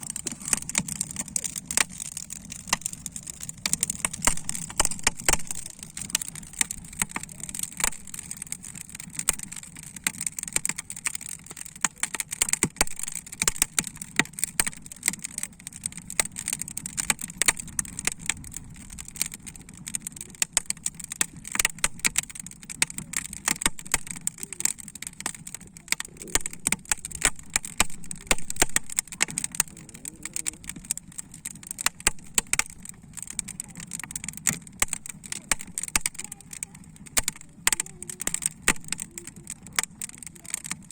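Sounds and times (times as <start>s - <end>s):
wood fire crackling and popping: 0.0s - 40.9s.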